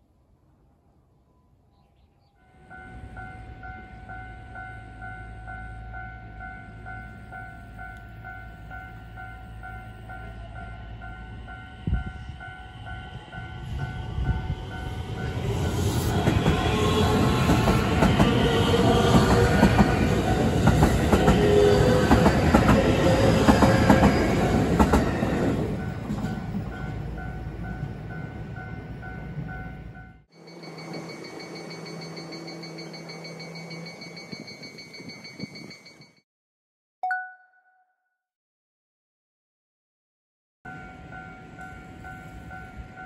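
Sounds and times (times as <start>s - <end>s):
crossing warning bell: 2.4s - 36.2s, 40.7s - 43.0s
train running with wheel clacks: 11.4s - 29.7s.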